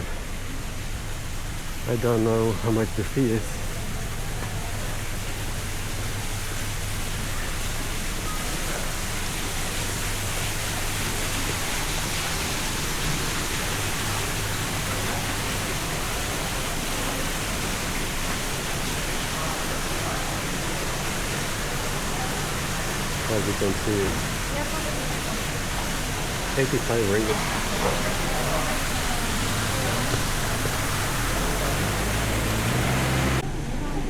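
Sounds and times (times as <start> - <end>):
steady rushing noise: 28.1 - 33.4.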